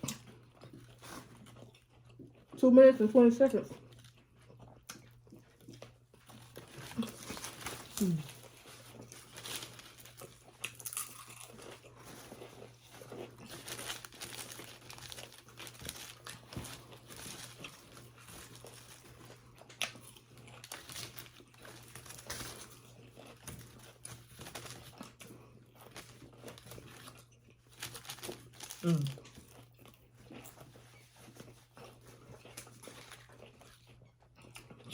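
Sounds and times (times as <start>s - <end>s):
crisp packet crinkling: 6.3s - 25.2s, 25.8s - 29.6s
potato chips being crunched: 6.4s - 25.2s, 25.8s - 29.6s.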